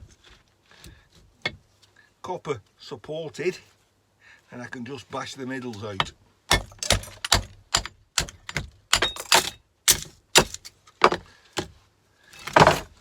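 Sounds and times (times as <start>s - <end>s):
hammer striking metal: 6.5s - 10.6s.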